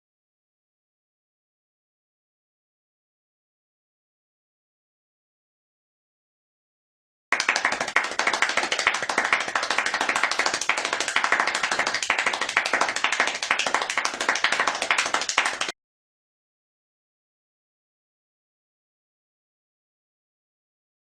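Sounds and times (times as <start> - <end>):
many hands clapping: 7.3 - 15.8.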